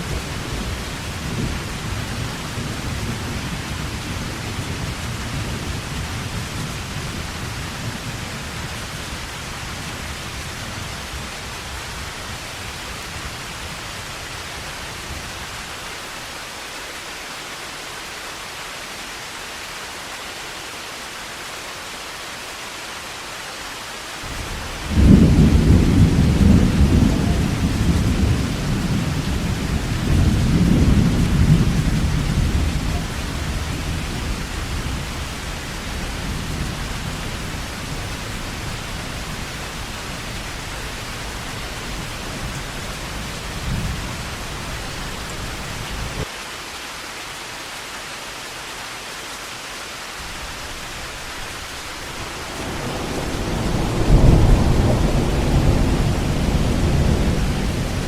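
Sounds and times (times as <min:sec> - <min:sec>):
heavy rain hissing: 0:00.0 - 0:58.0
deep thunder rumble: 0:24.3 - 0:46.3, 0:52.0 - 0:58.0.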